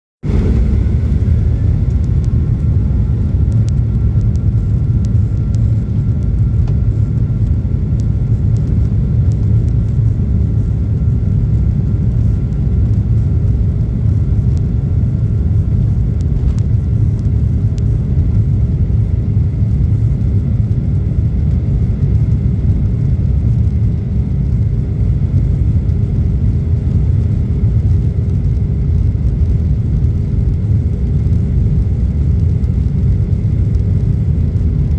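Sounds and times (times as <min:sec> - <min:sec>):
jet airliner rumble: 0:00.2 - 0:34.9
faint high whine: 0:00.3 - 0:26.8.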